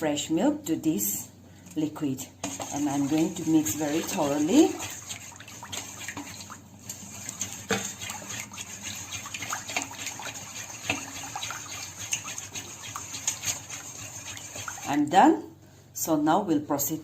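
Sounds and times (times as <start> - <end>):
liquid sloshing in a bowl: 1.6 - 15.2.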